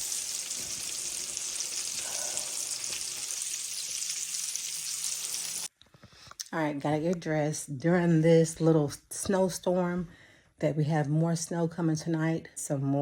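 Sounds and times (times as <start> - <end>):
food sizzling in a pan: 0.0 - 5.7.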